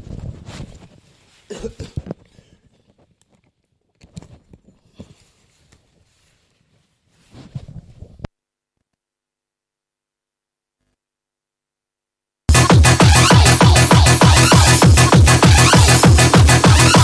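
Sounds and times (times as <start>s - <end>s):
rustling: 0.0s - 8.3s.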